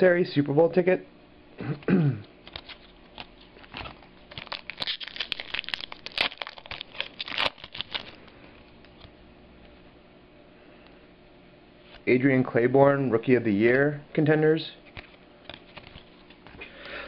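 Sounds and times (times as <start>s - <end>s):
wrapper crinkling and tearing: 2.4s - 8.3s.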